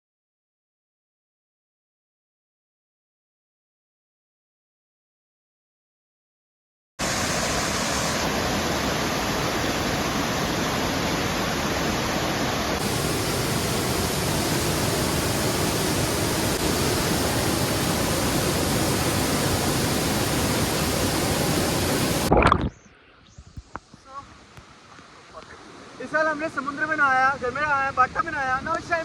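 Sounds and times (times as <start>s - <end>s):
waterfall rushing: 7.0s - 22.3s.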